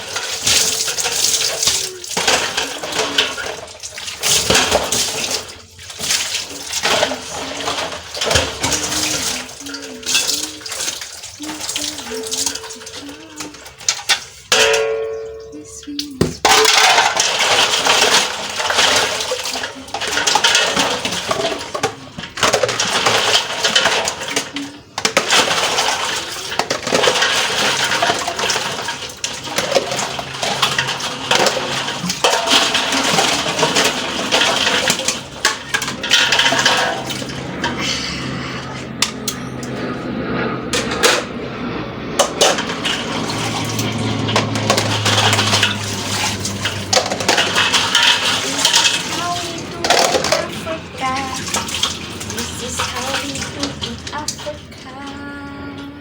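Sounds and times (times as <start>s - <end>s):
tap water running into sink: 0.0s - 15.0s, 42.4s - 55.0s
dishes and pots clattering: 0.0s - 41.4s, 42.2s - 54.8s.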